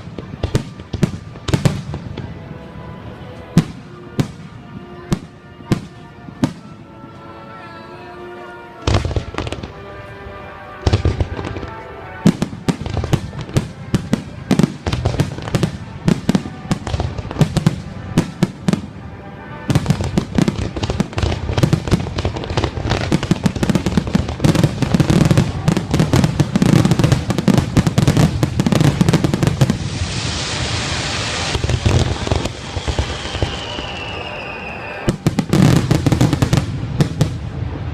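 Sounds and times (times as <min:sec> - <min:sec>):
fireworks booming: 0:00.0 - 0:06.8, 0:08.8 - 0:37.9
fireworks crackle: 0:00.0 - 0:07.4, 0:08.5 - 0:37.9
hissing crackle: 0:20.0 - 0:37.9.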